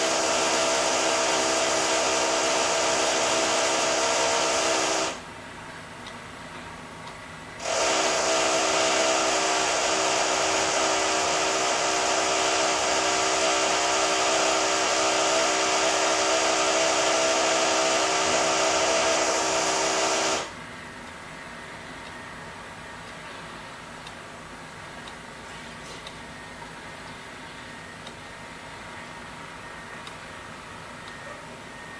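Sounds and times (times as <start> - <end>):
high-pitched power drill: 0.0 - 5.2, 7.6 - 20.5.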